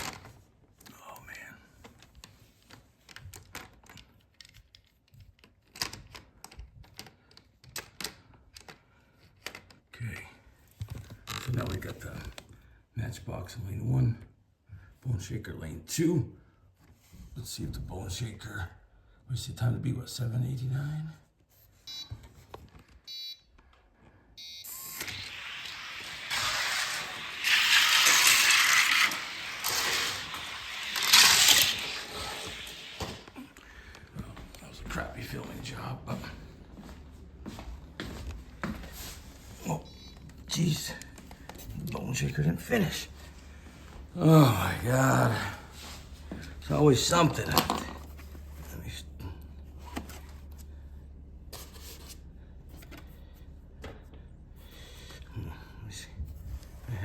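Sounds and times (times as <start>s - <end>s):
toy cars and plastic track clicking: 3.1s - 8.8s, 24.9s - 33.4s.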